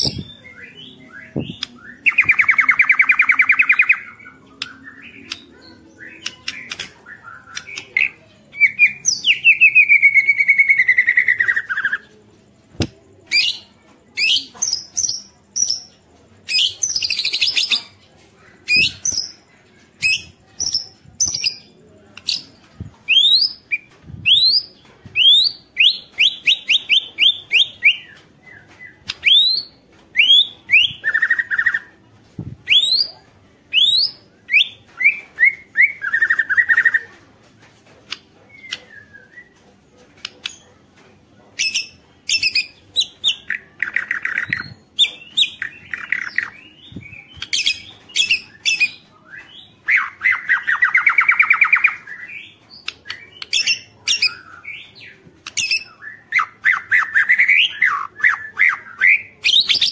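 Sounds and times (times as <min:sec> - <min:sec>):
bird singing whistled notes: 0:00.0 - 0:05.4, 0:32.6 - 0:33.1.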